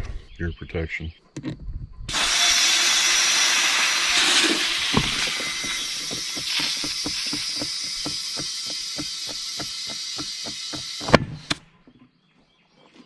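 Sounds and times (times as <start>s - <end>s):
compressed air hissing into tire: 2.1s - 11.6s.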